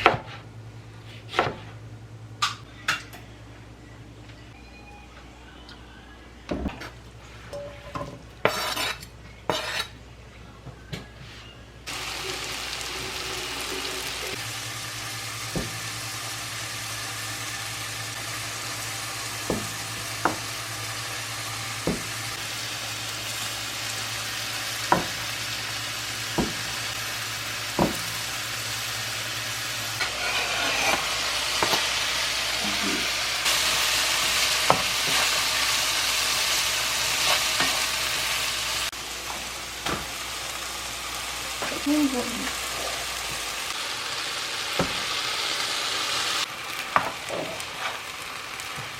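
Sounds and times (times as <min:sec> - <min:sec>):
food sizzling in a pan: 0:08.4 - 0:09.9, 0:11.8 - 0:48.9.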